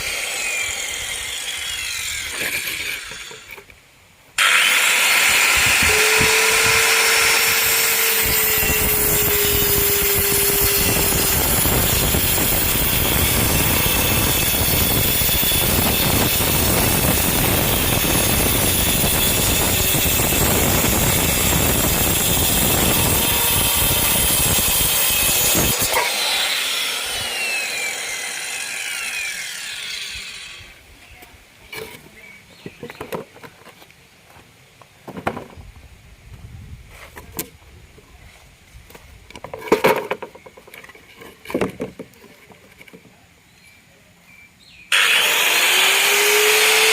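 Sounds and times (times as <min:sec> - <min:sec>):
saw blade whining down: 0:00.0 - 0:03.6, 0:04.4 - 0:30.8, 0:44.9 - 0:46.9
circular saw cutting plywood: 0:00.0 - 0:03.7, 0:04.4 - 0:30.8, 0:44.9 - 0:46.9.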